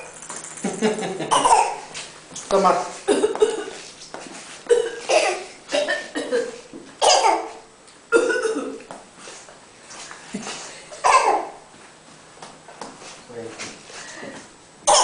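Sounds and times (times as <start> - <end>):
person coughing: 1.3 - 1.8, 3.1 - 3.8, 4.7 - 7.5, 8.1 - 8.9.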